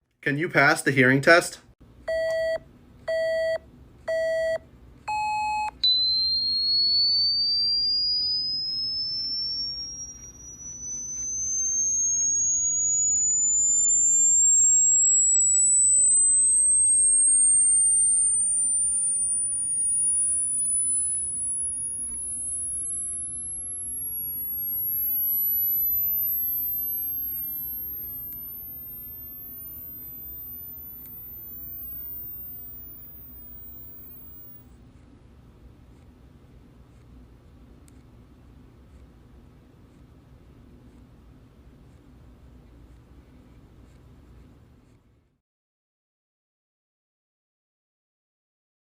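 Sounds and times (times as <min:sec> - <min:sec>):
short electronic beeps: 0:02.1 - 0:34.6
rising sine tone whistle: 0:03.1 - 0:34.7.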